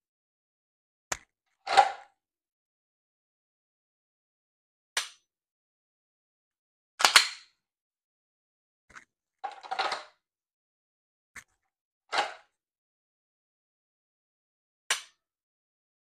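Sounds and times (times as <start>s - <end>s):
pistol metallic clicks and clacks: 7.0s - 7.5s.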